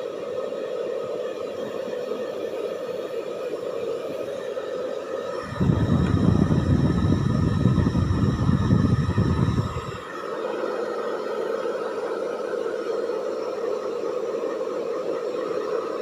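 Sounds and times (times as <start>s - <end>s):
hair dryer blowing: 0.0s - 16.0s
loud low rumble: 5.5s - 10.0s.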